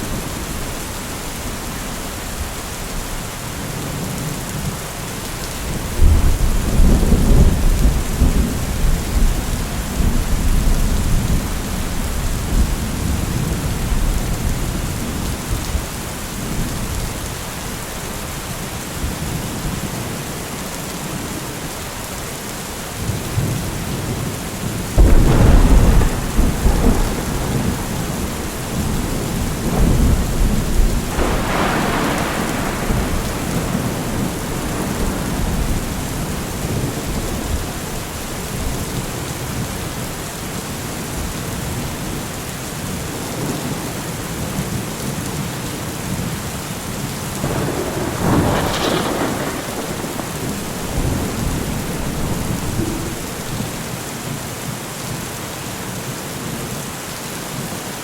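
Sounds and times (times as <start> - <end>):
steady rain: 0.0 - 58.0
thunder rumbling: 5.6 - 17.3, 24.8 - 40.1, 47.4 - 54.2.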